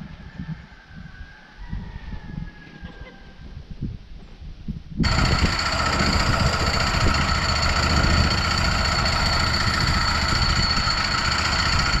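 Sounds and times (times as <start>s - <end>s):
engine running steadily: 5.0s - 12.0s.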